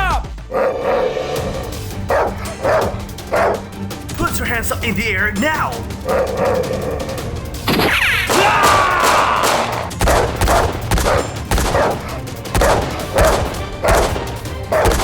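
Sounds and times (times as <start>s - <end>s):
gunshots: 7.6s - 15.0s.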